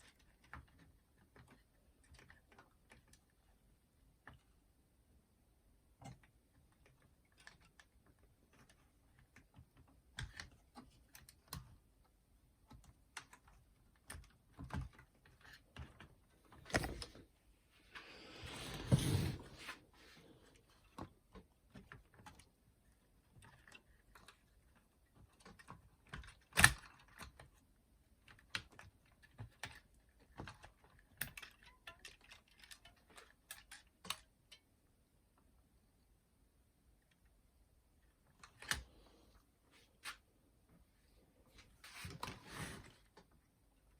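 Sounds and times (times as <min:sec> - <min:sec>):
small clicks and taps of parts: 0:00.0 - 0:04.7, 0:05.9 - 0:17.1, 0:20.6 - 0:35.5, 0:38.0 - 0:39.0
rustling scrape: 0:18.1 - 0:20.3, 0:41.8 - 0:43.0.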